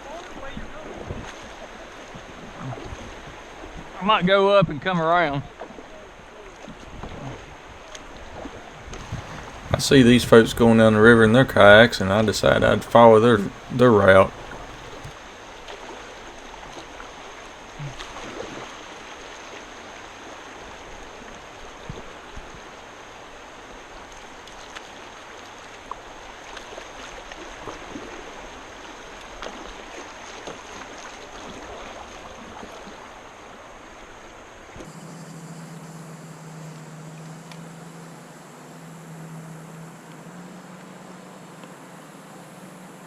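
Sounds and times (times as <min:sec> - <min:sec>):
river water rushing and splashing: 0:09.0 - 0:10.6, 0:35.4 - 0:43.0
steady low hum: 0:09.0 - 0:15.1, 0:34.9 - 0:43.0.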